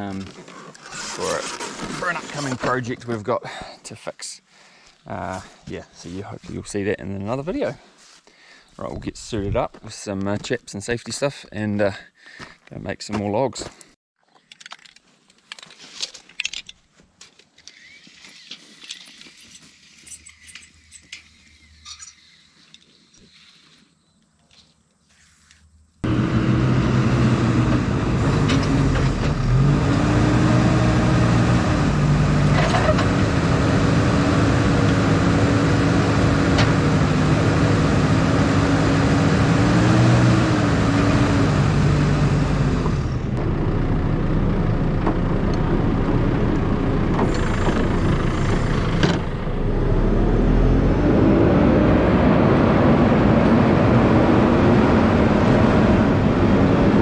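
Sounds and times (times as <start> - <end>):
heavy machine engine running: 26.0 - 51.4.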